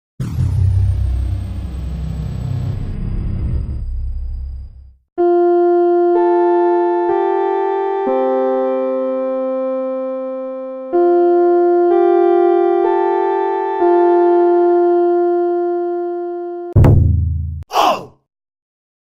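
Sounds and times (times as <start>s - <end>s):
electric piano chords: 5.2s - 16.7s.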